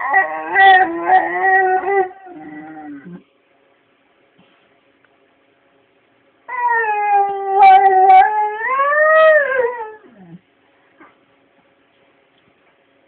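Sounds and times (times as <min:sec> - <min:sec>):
dog howling: 0:00.0 - 0:03.2, 0:06.5 - 0:10.4.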